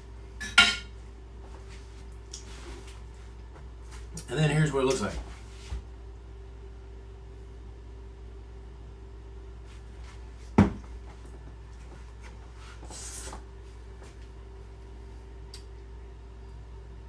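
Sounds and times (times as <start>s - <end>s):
faint steady hum: 0.0s - 17.0s
soft rustle or scrape: 1.5s - 4.1s, 5.0s - 5.9s.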